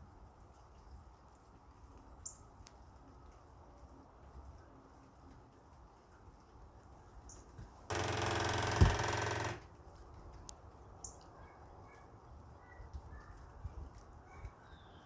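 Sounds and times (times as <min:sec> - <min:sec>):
rapid rattle of knocks: 0:07.9 - 0:09.7.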